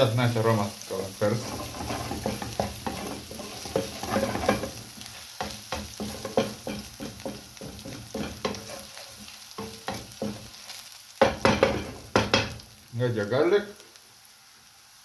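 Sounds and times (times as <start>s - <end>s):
garlic sizzling in oil: 0.0s - 15.0s
utensil scraping a pan: 1.2s - 10.7s.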